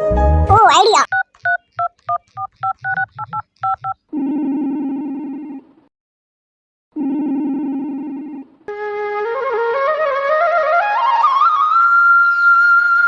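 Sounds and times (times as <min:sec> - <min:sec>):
phone keypad beeps: 0:01.0 - 0:04.0
phone ringback tone: 0:01.1 - 0:04.0.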